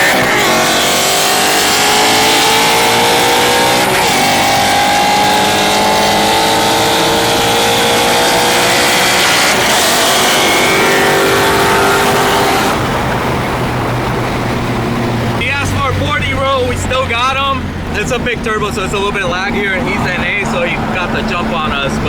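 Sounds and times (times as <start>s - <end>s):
rotary engine accelerating: 0.0s - 22.0s.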